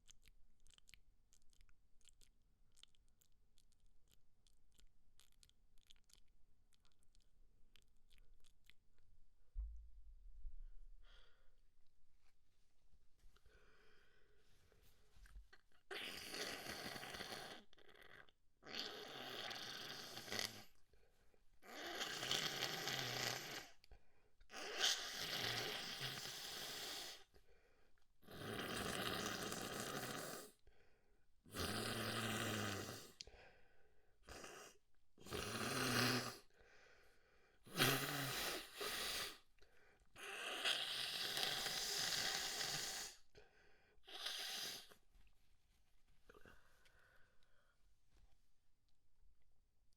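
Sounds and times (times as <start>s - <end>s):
person blowing nose: 37.7s - 39.4s.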